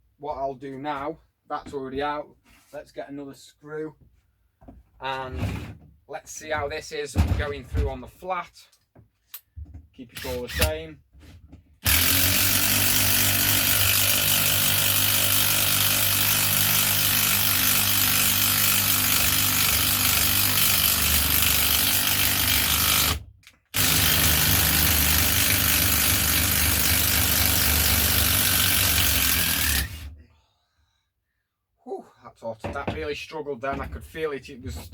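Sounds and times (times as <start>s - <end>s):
impact driver hammering screw: 11.8s - 30.1s.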